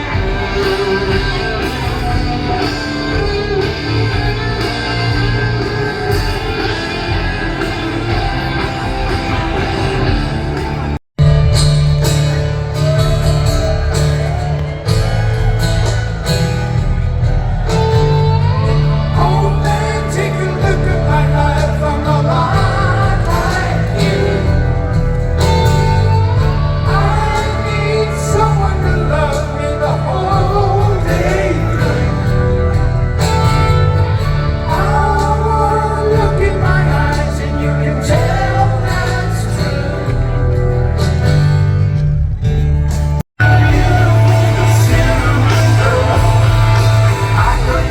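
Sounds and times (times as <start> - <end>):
live band music: 0.0 - 47.9
person singing: 17.6 - 40.4, 43.4 - 47.9.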